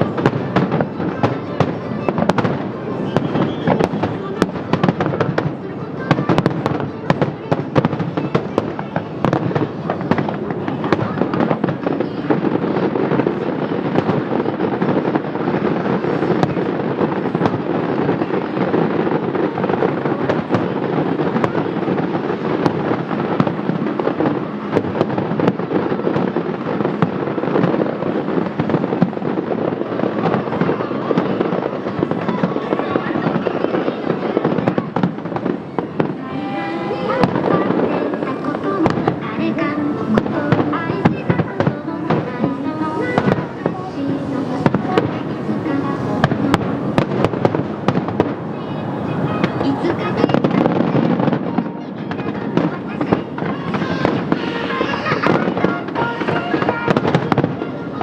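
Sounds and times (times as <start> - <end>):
fireworks crackling and banging: 0.0 - 58.0.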